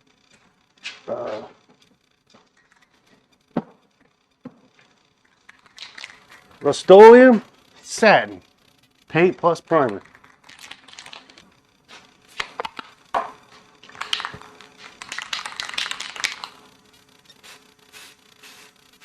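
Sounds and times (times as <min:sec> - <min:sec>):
aerosol spray can hissing: 0:13.9 - 0:16.6, 0:17.3 - 0:19.0.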